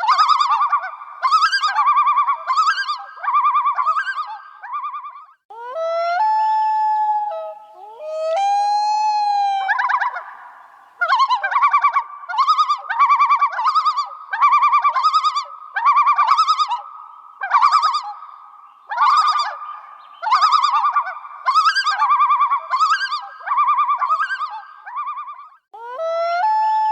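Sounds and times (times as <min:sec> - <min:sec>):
bird-like warbling call: 0:05.8 - 0:18.2.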